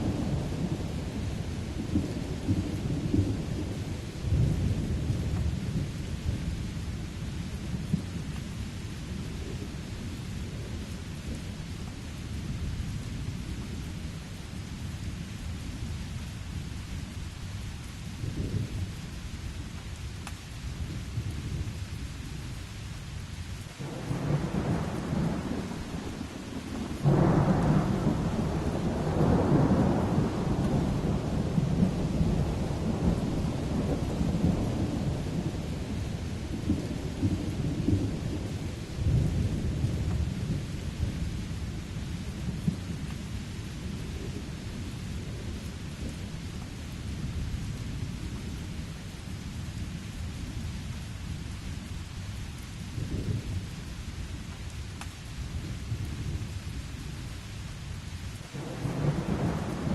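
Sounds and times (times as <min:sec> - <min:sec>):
steady rain falling: 0:00.0 - 0:59.9
thunder rumbling: 0:23.8 - 0:46.4, 0:58.4 - 0:59.9.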